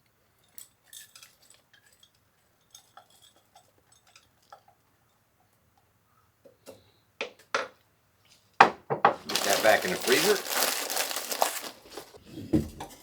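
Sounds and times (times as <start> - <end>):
faint kitchen clicks and clinks: 0.0 - 7.5.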